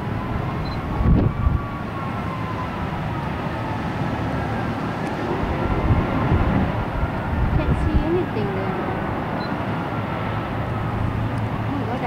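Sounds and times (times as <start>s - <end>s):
low outdoor rumble: 0.0s - 12.0s
wind buffeting microphone: 0.0s - 12.0s
faint tone sliding down in pitch: 4.5s - 7.8s.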